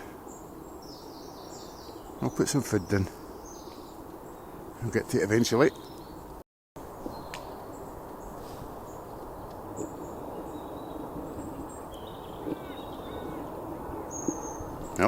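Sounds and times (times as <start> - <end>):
faint high bird calls: 9.7 - 15.0.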